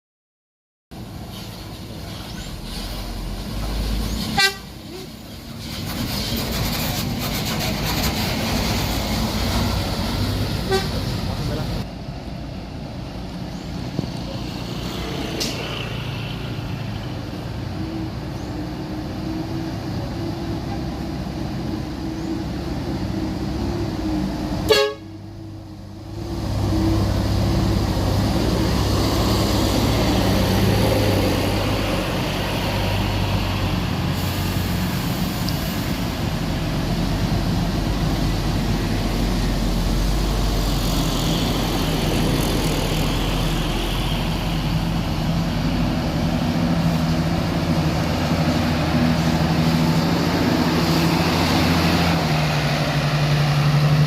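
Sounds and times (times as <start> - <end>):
bus engine running: 0.9 - 54.0
bus horn: 4.3 - 5.2, 10.6 - 11.1, 24.6 - 25.2.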